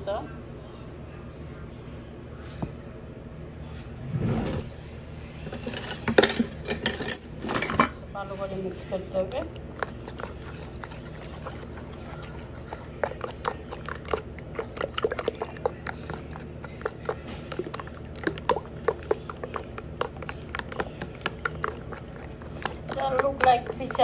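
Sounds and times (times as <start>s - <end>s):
eggs beaten in a bowl: 8.8s - 24.0s.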